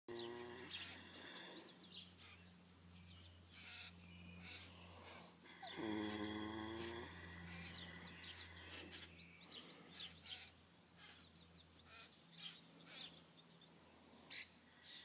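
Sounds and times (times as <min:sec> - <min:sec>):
horse snoring: 0:00.1 - 0:01.3, 0:05.5 - 0:08.5
small birds chirping: 0:00.1 - 0:15.0.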